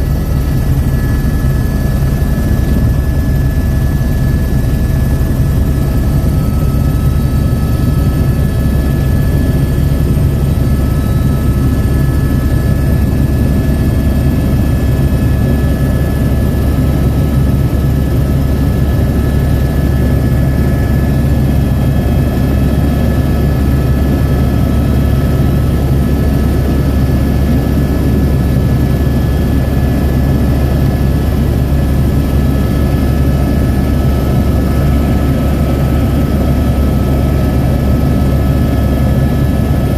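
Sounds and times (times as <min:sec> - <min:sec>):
helicopter rotor and engine drone: 0:00.0 - 0:39.9.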